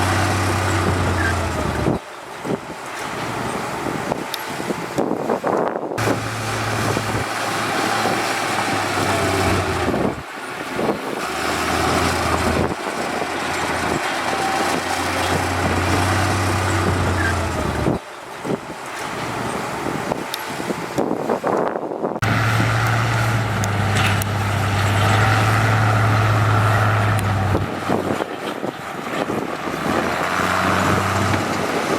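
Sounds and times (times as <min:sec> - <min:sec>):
rough mechanical noise: 0:00.0 - 0:21.6, 0:22.2 - 0:31.9
heavy machinery diesel engines: 0:00.0 - 0:31.9
low hum: 0:06.0 - 0:10.3, 0:22.2 - 0:27.9.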